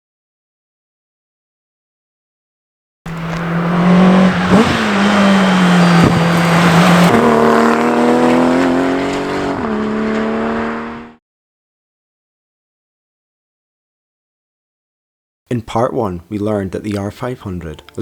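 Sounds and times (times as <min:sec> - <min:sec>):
sports car engine running hard: 0:03.1 - 0:11.1.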